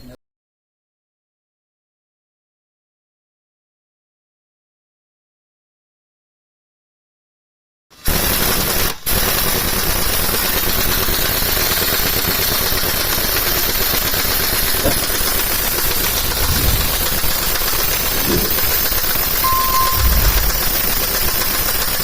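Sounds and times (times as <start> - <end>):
engine idling: 11.9 - 22.0
short beep: 19.4 - 20.8.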